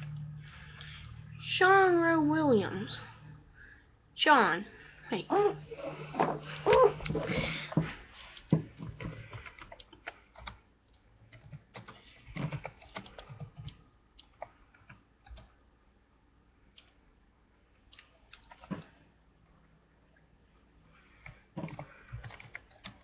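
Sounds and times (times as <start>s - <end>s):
typing on a keyboard: 9.3s - 10.6s, 11.3s - 15.6s, 21.2s - 23.0s.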